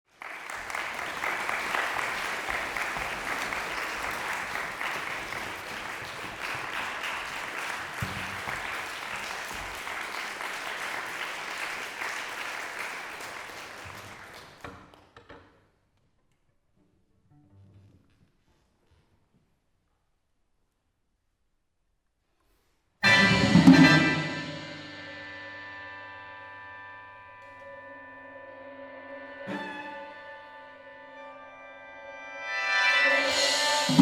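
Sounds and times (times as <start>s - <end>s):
audience applauding: 0.0s - 14.8s.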